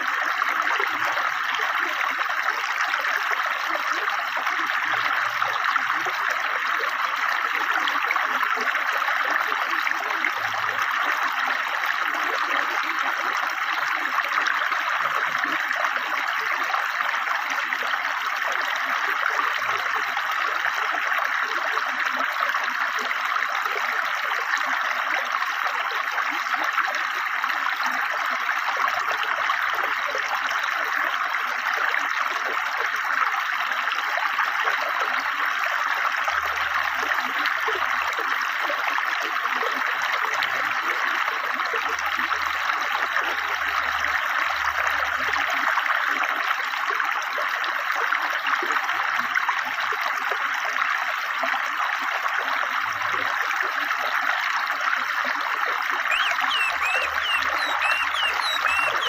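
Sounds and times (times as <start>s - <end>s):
river flowing swiftly: 56.0s - 59.0s.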